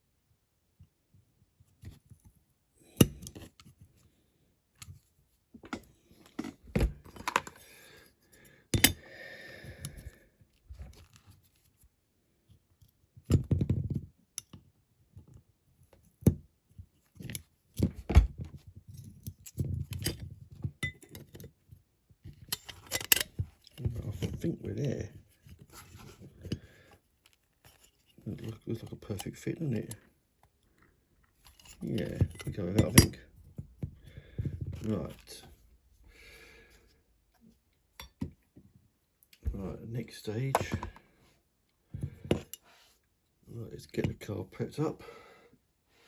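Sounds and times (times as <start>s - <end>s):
clicks and knocks of small parts: 5.6s - 7.6s, 22.2s - 24.4s.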